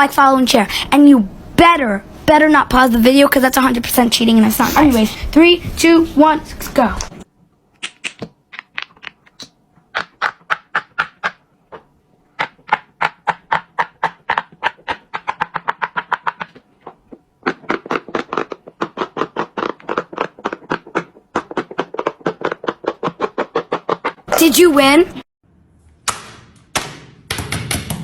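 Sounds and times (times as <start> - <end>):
fidget toy bubbles popping: 17.4 - 24.5.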